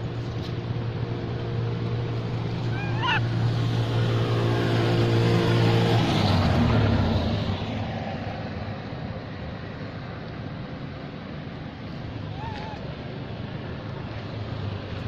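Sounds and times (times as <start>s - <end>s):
vehicle engine passing: 0.8s - 8.8s.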